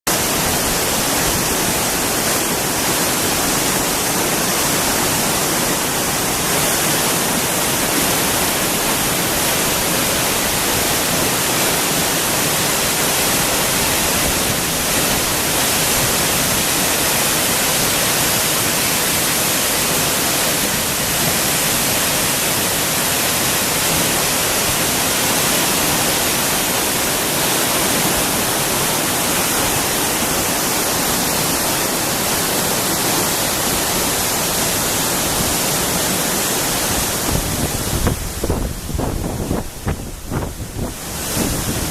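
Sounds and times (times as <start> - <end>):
waterfall rushing: 0.1 - 41.9.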